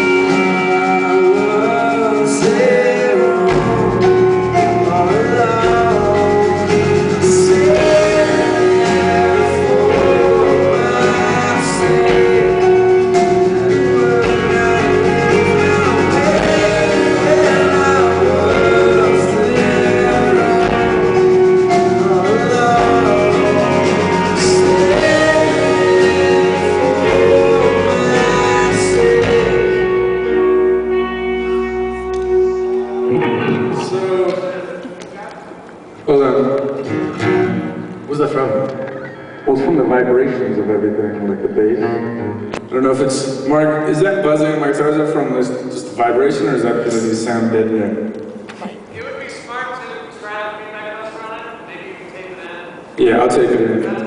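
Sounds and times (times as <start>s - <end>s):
lead singer singing: 0.0s - 35.0s
rock band playing live: 0.0s - 39.4s, 40.2s - 47.0s.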